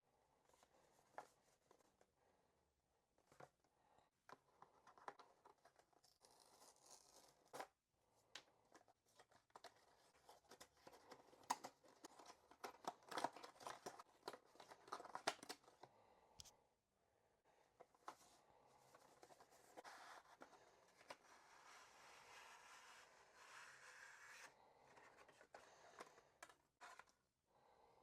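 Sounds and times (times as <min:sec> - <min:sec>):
cardboard and plastic packaging rustling: 0:08.8 - 0:15.9.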